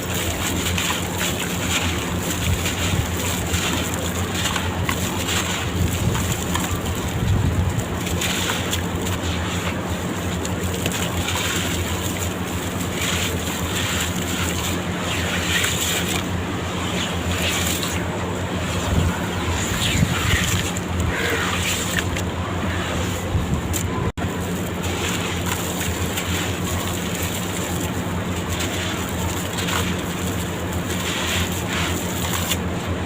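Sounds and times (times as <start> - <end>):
blocks crumbling in water: 0.0 - 16.4, 23.6 - 32.8.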